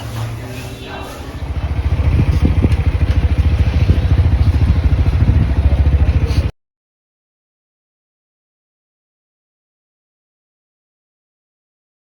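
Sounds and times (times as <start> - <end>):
motorcycle engine running: 1.2 - 6.5.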